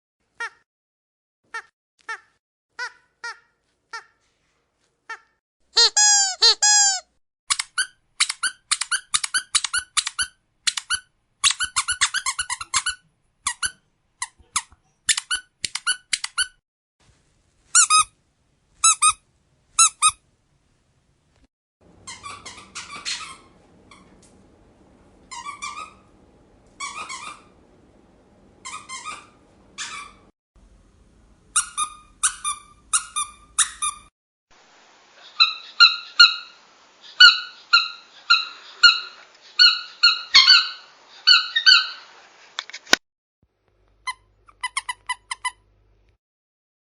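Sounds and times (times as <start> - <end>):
squeaky dog toy squeaking: 5.1 - 16.6, 17.7 - 18.2, 18.8 - 19.2, 19.8 - 20.2, 22.0 - 24.1, 25.3 - 26.1, 26.8 - 27.5, 28.6 - 30.3, 31.6 - 34.1, 37.2 - 42.0, 44.0 - 45.7.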